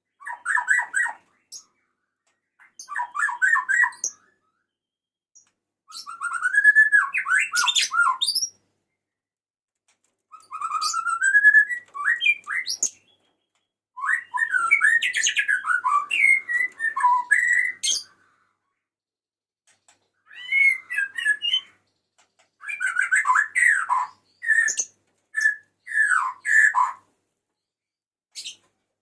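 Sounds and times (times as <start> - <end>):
bird whistled song: 0.1 - 8.6, 10.3 - 18.3, 20.2 - 27.1, 28.4 - 28.7.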